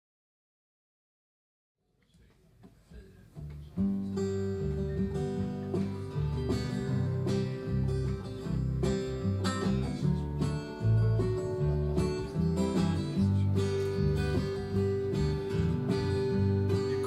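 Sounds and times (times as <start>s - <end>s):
acoustic guitar strumming: 3.4s - 17.0s
low bass line: 3.4s - 17.0s.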